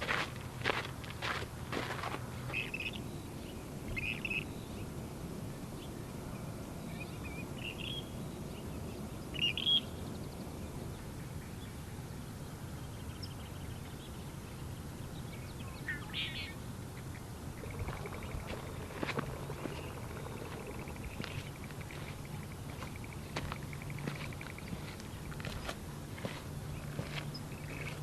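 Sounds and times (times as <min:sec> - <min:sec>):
footstep: 0:00.0 - 0:02.6, 0:17.7 - 0:28.0
low outdoor rumble: 0:00.0 - 0:28.0
short bird calls: 0:15.5 - 0:25.7.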